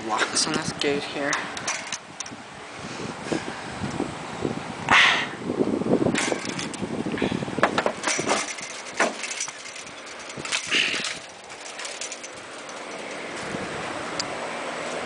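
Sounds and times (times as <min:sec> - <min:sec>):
padlocks clicking and rattling: 0:00.5 - 0:02.4, 0:06.2 - 0:06.8, 0:07.7 - 0:13.4
keys jangling: 0:01.4 - 0:02.1, 0:06.2 - 0:06.8, 0:08.0 - 0:13.4.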